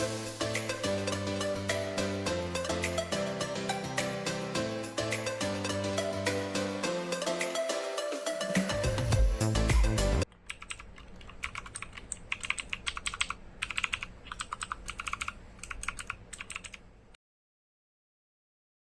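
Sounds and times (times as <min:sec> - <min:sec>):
loud background music: 0:00.0 - 0:10.2
clicky mechanical keyboard typing: 0:10.3 - 0:16.8.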